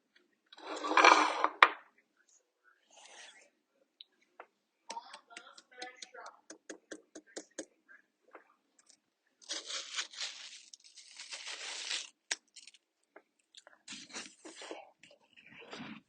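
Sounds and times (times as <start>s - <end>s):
crunching watermelon: 9.4s - 12.8s, 13.5s - 14.9s.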